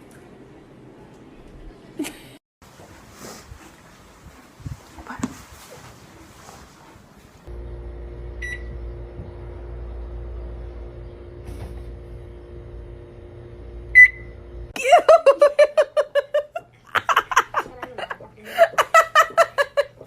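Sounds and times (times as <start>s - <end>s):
microwave oven hum: 7.4s - 15.8s
microwave beep: 8.2s - 9.0s, 13.8s - 14.6s.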